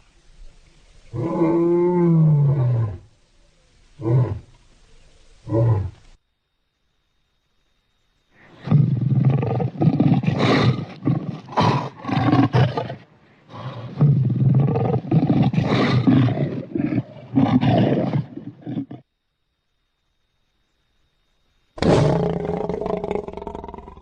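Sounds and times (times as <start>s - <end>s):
lion roaring: 1.1s - 3.0s, 8.5s - 19.0s, 21.8s - 24.0s.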